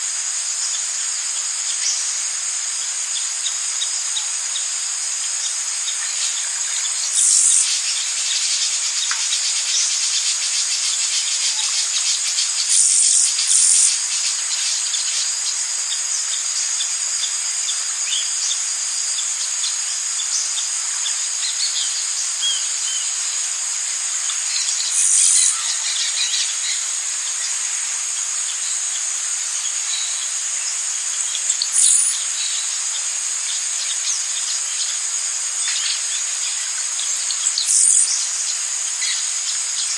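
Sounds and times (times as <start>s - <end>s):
high-pitched insect chorus: 0.0s - 39.9s
faint bird chirps: 6.2s - 8.6s, 11.7s - 15.2s, 24.6s - 26.8s, 31.4s - 32.2s, 37.5s - 38.2s.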